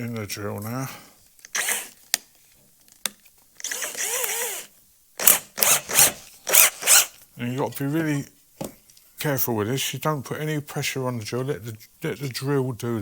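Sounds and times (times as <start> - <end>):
drill chuck rasping: 1.5 - 2.0, 3.6 - 7.2
drill motor spinning: 1.5 - 2.0, 3.6 - 7.1.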